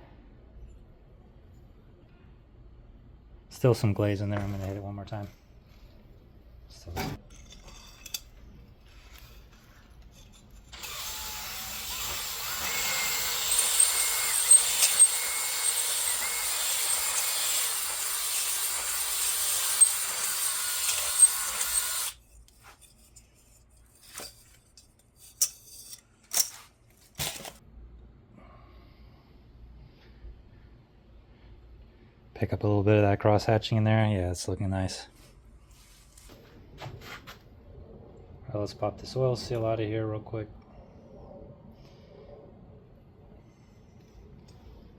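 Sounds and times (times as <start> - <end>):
electric drill honing cylinder: 10.7 - 22.2.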